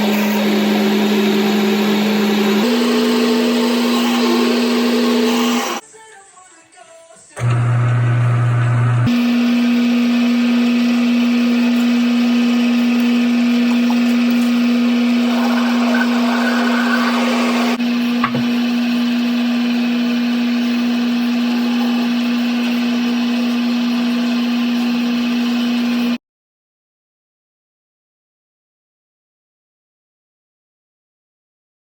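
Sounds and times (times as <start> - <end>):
electric motor humming: 0.0 - 5.8, 7.4 - 26.2.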